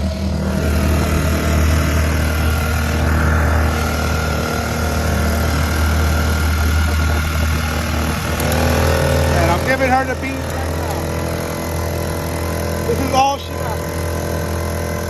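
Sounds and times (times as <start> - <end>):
outboard motor running: 0.0 - 15.0.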